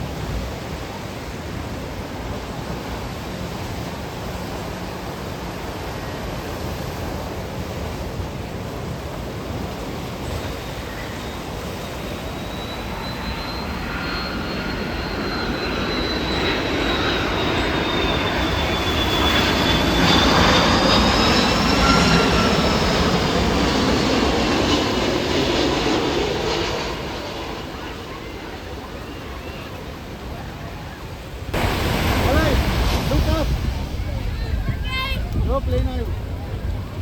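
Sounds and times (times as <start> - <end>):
airplane flying past: 0.0 - 37.0
high engine whine: 8.8 - 37.0.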